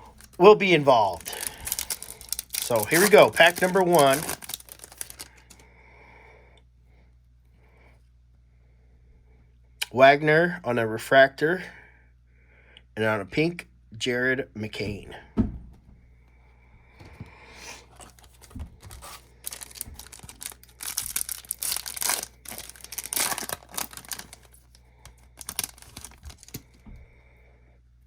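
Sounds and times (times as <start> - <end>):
foil wrapper crinkling: 0.0 - 5.6, 17.8 - 26.8.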